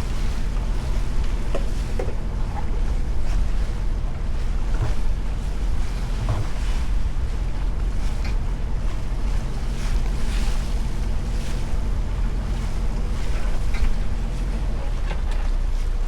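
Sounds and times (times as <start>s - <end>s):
wind and water hiss: 0.0s - 14.8s
boat engine running: 0.0s - 16.0s.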